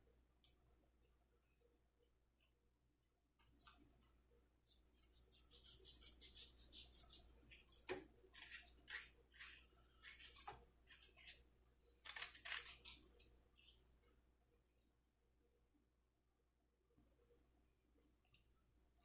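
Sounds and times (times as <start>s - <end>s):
knife scraping and cutting leaf: 4.7s - 11.4s, 12.0s - 13.2s.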